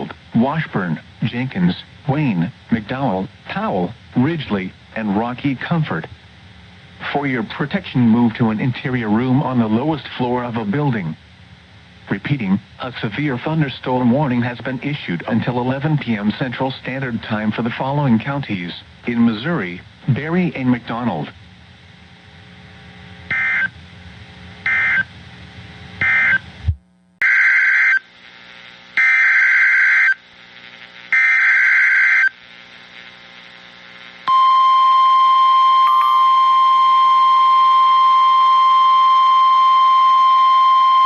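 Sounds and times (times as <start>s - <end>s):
steady warning alarm tone: 23.3s - 23.7s, 34.3s - 41.0s.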